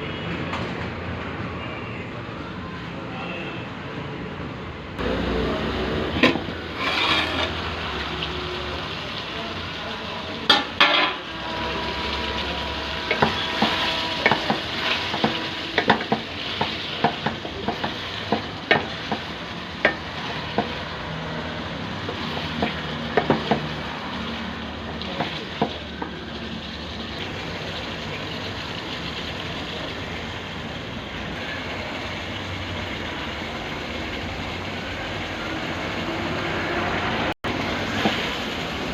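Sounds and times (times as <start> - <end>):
metal spoon scraping a pan: 6.2 - 7.8, 10.5 - 17.8
meat sizzling in a pan: 6.7 - 32.6.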